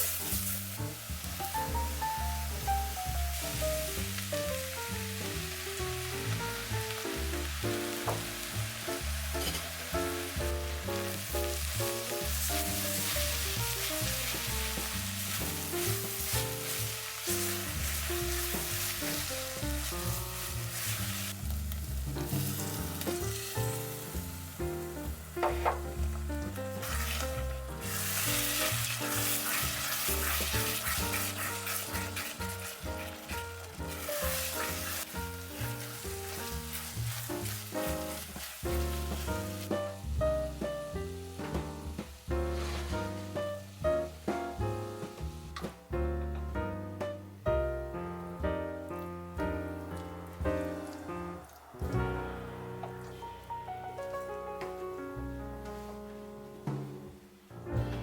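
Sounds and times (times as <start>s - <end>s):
food sizzling in hot oil: 0.0s - 45.6s, 49.8s - 53.6s
background music: 38.8s - 57.0s.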